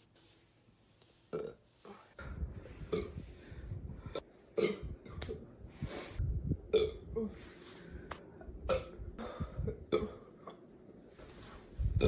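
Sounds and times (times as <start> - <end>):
woman burping: 6.7 - 7.2, 9.7 - 10.3.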